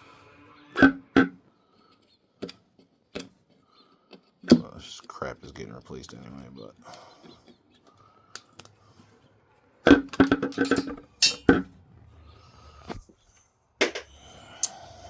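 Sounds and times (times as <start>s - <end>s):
metal tools clanking: 10.4s - 11.6s.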